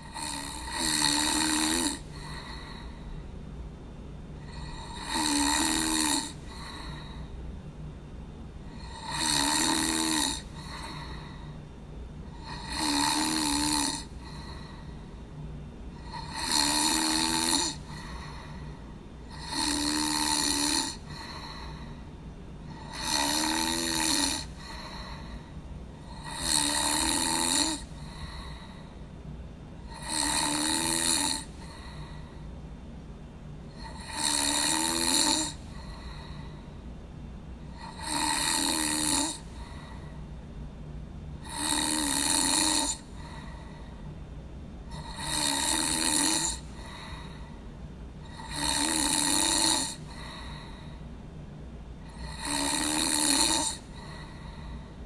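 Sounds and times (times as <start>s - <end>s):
person snoring: 0.0s - 3.2s, 4.4s - 7.3s, 8.7s - 11.6s, 12.3s - 15.0s, 15.9s - 22.0s, 22.7s - 28.9s, 29.8s - 32.4s, 33.7s - 36.6s, 37.7s - 40.2s, 41.4s - 44.0s, 44.9s - 47.5s, 48.2s - 51.0s, 52.0s - 55.0s
low steady hum: 0.0s - 55.0s.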